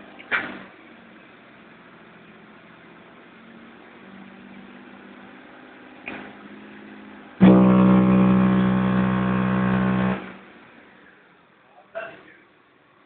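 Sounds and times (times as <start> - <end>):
faint low hum: 7.4 - 10.3
subwoofer bass test tone: 7.4 - 10.3.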